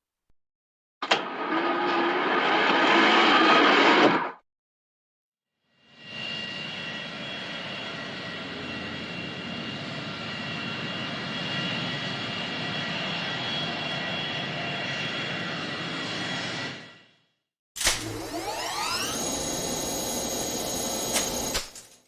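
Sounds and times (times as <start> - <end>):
aircraft engine drone with whine: 5.7 - 17.3, 17.9 - 21.8.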